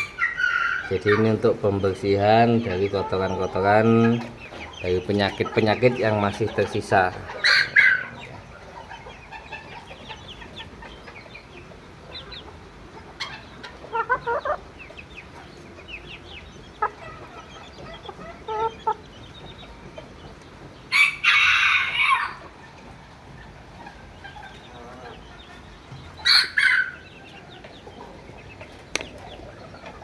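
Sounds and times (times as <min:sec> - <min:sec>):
chickens clucking: 0:00.0 - 0:30.0
rooster crowing: 0:20.9 - 0:22.5.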